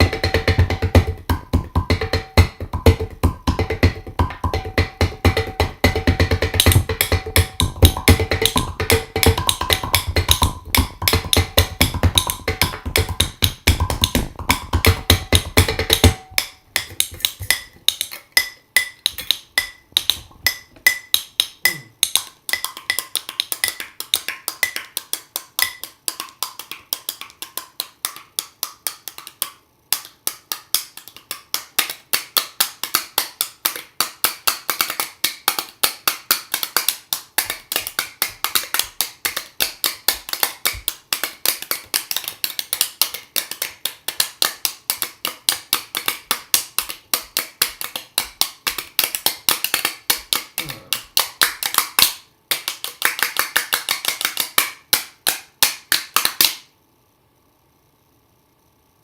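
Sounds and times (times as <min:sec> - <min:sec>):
samba hand percussion: 0:00.0 - 0:56.6.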